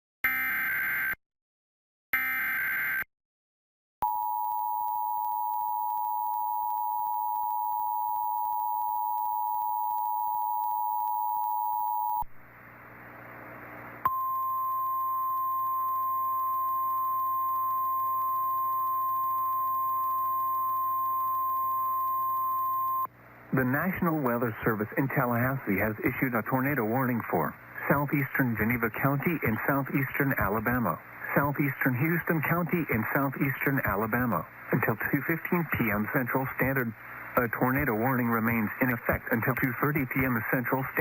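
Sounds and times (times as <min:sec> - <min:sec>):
steady warning alarm tone: 0:04.0 - 0:12.2, 0:14.1 - 0:23.1
radio hiss: 0:23.4 - 0:41.0.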